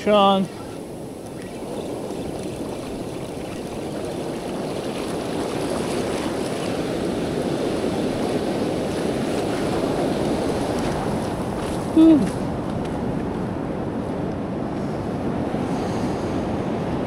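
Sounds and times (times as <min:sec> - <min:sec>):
ocean surf washing: 0:00.0 - 0:17.0
wind buffeting microphone: 0:00.0 - 0:17.0.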